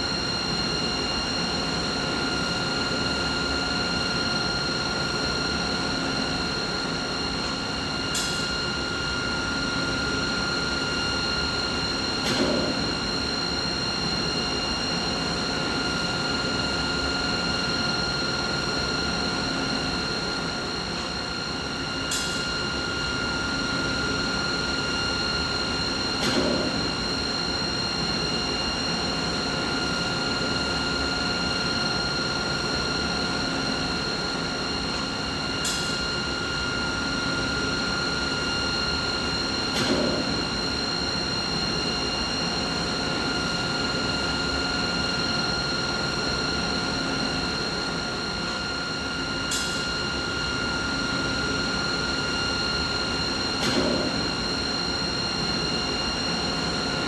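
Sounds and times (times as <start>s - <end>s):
machine noise with high whine: 0.0s - 57.0s
sharp click: 53.6s - 54.2s.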